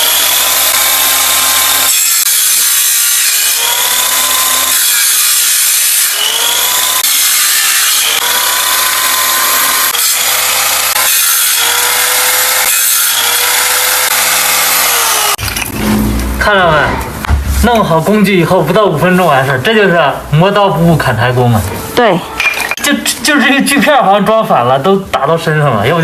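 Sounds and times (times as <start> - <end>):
circular saw cutting wood: 0.0 - 16.1.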